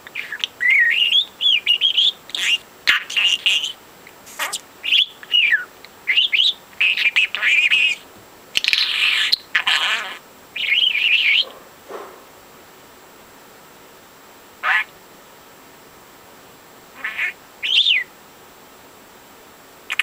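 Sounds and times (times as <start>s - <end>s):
budgerigar chattering: 0.2s - 8.0s, 8.6s - 11.6s, 14.6s - 14.9s, 17.0s - 18.1s.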